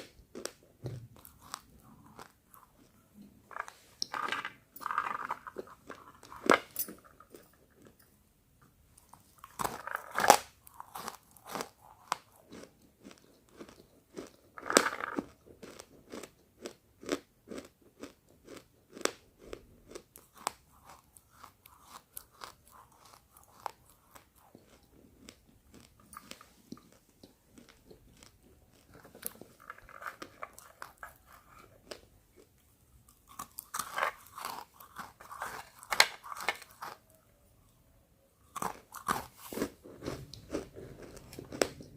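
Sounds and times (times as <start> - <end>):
crunchy chewing clicks: 9.4 - 37.0.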